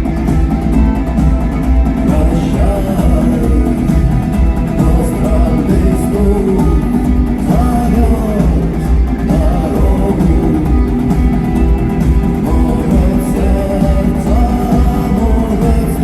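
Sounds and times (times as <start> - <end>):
rock band playing loudly: 0.0 - 16.0.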